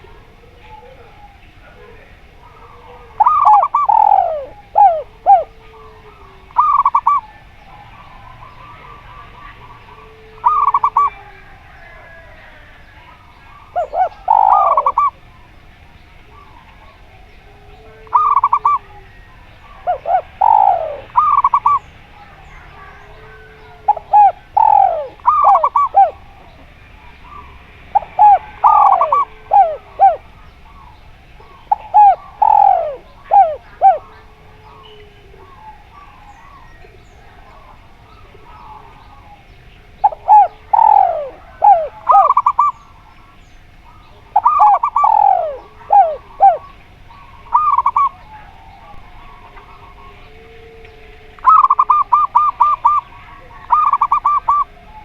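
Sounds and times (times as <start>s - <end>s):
doves cooing: 0.0s - 55.0s
small birds chirping: 0.0s - 55.0s.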